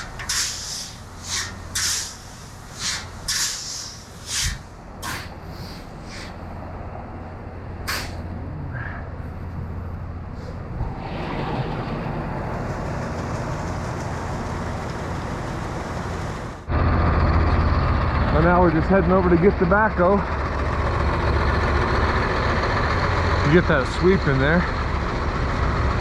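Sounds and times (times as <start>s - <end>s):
loud engine: 0.0s - 26.0s
shovel scraping through grain: 2.8s - 6.2s.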